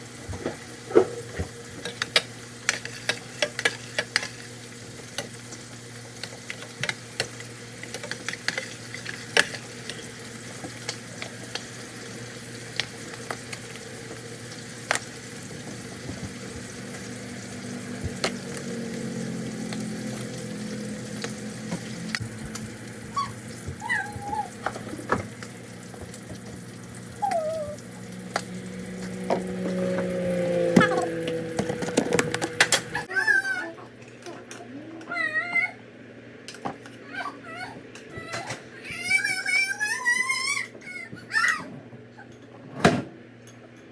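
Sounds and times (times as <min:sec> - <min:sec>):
food sizzling in a frying pan: 0:00.0 - 0:31.6.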